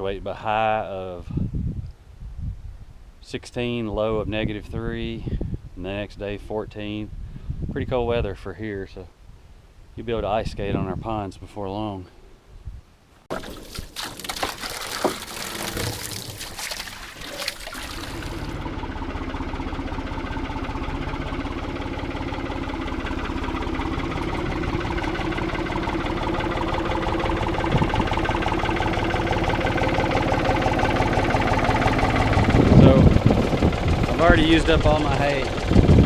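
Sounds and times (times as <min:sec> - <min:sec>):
water splashing and pouring: 0:13.3 - 0:18.6
tractor engine running: 0:13.3 - 0:36.0.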